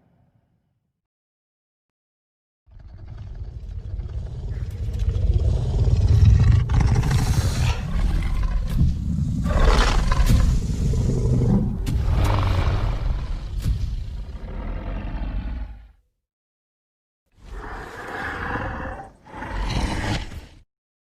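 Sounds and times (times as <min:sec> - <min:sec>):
deep dinosaur roar: 0:02.7 - 0:16.0, 0:17.4 - 0:20.6.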